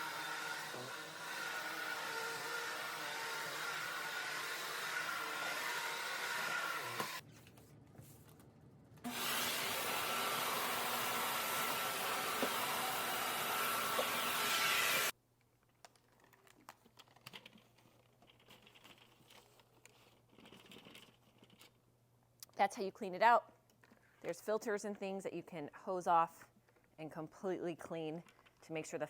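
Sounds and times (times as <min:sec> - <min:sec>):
vacuum cleaner motor whirring: 0:00.0 - 0:07.2, 0:09.1 - 0:15.1.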